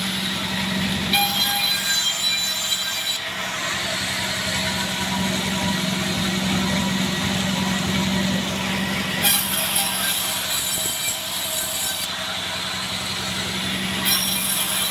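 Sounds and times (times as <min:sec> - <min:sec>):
band sawmill running: 0:00.0 - 0:14.9.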